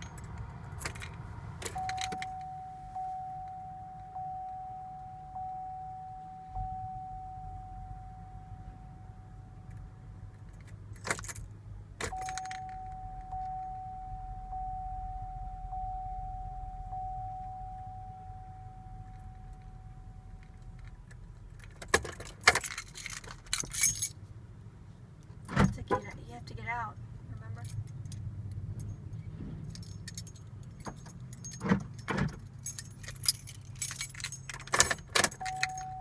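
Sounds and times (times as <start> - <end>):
low hum: 0.0 - 21.8
keys jangling: 9.7 - 13.8, 19.0 - 24.2, 29.6 - 36.0
high electronic tone: 12.1 - 20.4.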